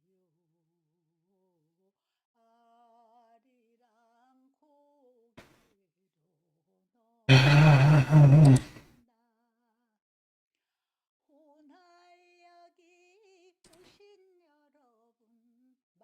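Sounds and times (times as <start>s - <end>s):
man humming: 7.3s - 8.8s.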